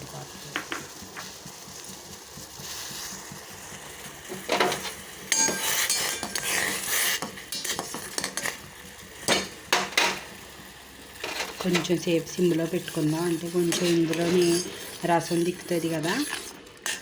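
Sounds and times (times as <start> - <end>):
low sizzle of boiling water: 0.0 - 17.0
metal utensil scraping a pot: 4.5 - 8.6, 11.2 - 12.0, 12.6 - 17.0.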